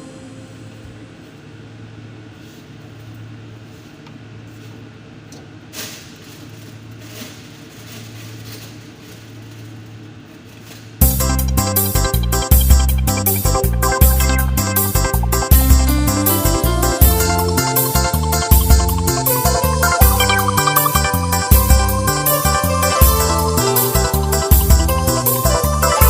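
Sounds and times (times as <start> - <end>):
steady low hum: 0.0 - 26.0
loud electronic music: 11.0 - 26.0.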